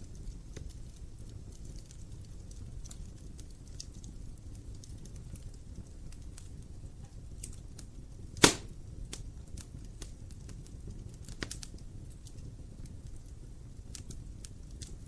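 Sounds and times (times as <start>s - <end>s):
burning wood popping: 0.0s - 15.0s
low rumble of flames: 0.0s - 15.0s
wood fire crackling: 0.0s - 15.0s.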